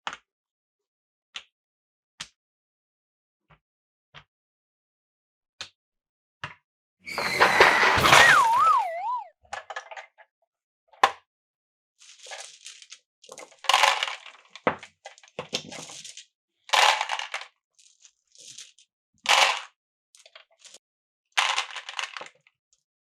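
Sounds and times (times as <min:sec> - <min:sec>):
short wavering tone: 0:08.0 - 0:09.3.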